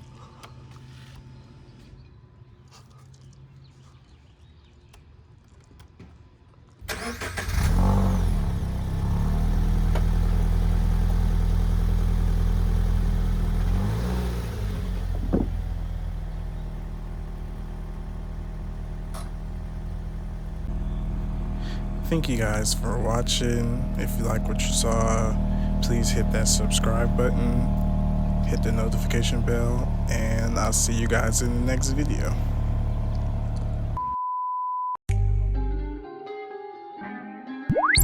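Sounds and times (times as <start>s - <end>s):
car engine starting and idling: 6.8s - 34.0s.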